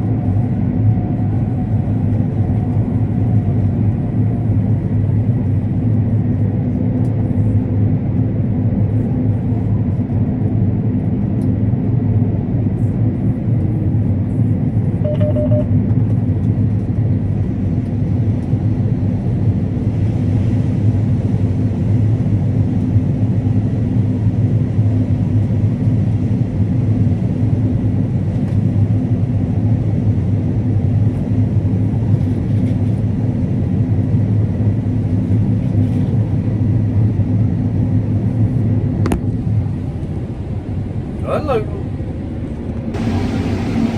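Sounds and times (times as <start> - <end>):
faint short beep: 15.0 - 15.7
combine harvester droning: 38.3 - 43.9.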